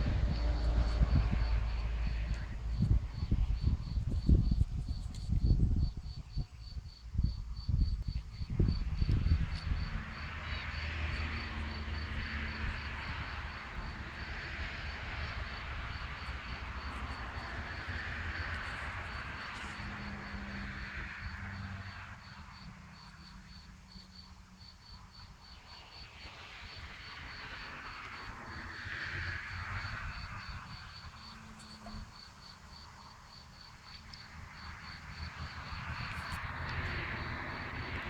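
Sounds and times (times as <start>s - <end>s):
high insect chirping: 19.4s - 38.0s.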